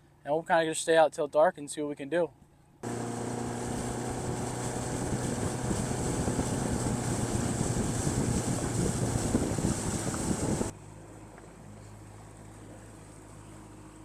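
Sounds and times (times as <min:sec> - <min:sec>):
rushing water: 0:02.8 - 0:10.7
rushing wind: 0:02.8 - 0:10.7
boat motor humming: 0:02.8 - 0:14.0.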